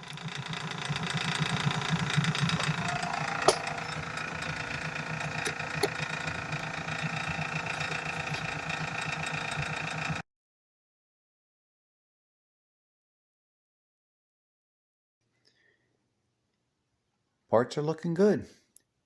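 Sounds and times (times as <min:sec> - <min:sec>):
wire wheel spinning with hum: 0:00.0 - 0:10.2.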